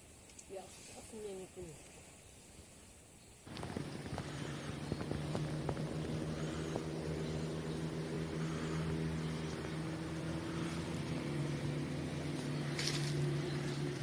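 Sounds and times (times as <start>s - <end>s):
faint clicks: 0.2s - 0.5s
low engine hum: 3.5s - 14.0s.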